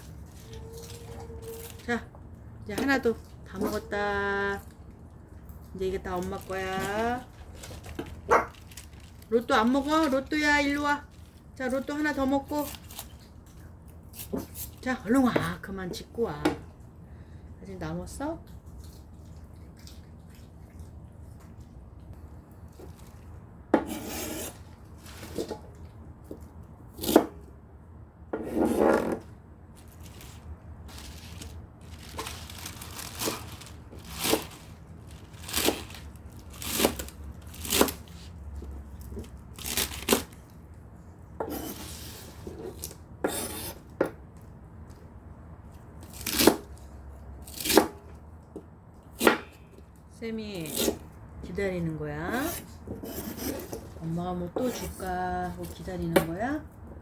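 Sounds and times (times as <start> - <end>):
dog crunching cabbage: 0.0 - 15.1, 29.6 - 40.8.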